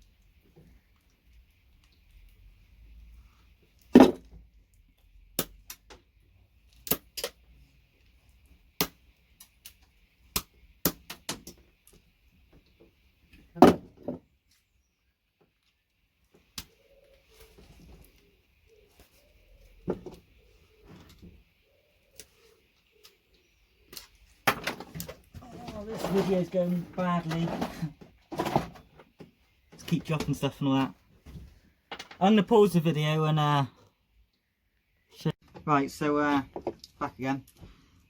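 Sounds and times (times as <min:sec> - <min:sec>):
tools and connectors clattering: 0:24.4 - 0:29.1.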